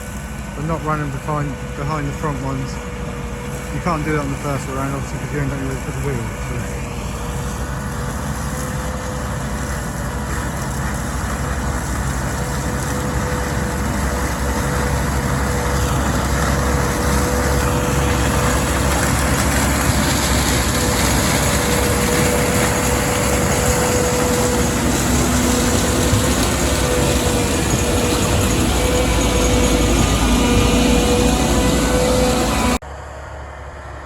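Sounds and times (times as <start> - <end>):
heavy diesel farm machinery: 0.0 - 34.0
steady whine: 0.0 - 34.0.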